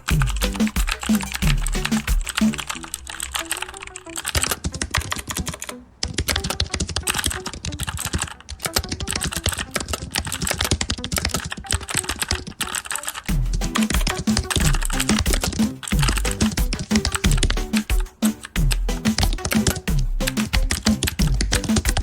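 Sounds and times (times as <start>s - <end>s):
background music with bass beat: 0.0s - 3.5s, 13.3s - 22.0s.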